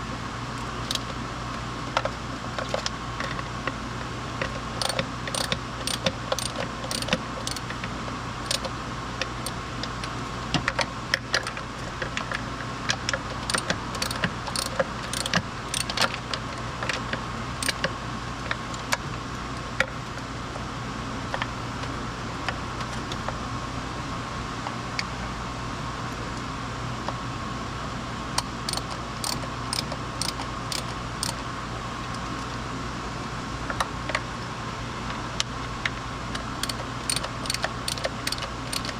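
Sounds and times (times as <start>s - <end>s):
metallic clicks of hand tools: 0.8s - 1.2s, 4.4s - 7.7s, 8.4s - 8.7s, 13.4s - 16.2s, 17.6s - 17.9s, 28.7s - 31.4s, 36.6s - 38.9s.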